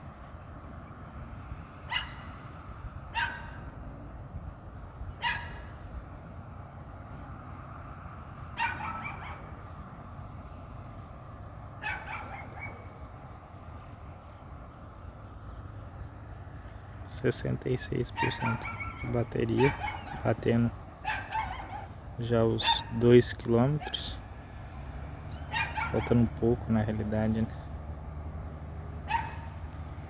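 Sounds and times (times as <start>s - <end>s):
dog barking: 1.9s - 2.2s, 3.2s - 3.6s, 5.2s - 5.6s, 8.6s - 9.5s, 11.8s - 12.8s, 18.2s - 20.3s, 21.0s - 21.9s, 22.6s - 23.0s, 25.5s - 26.2s, 29.1s - 29.6s.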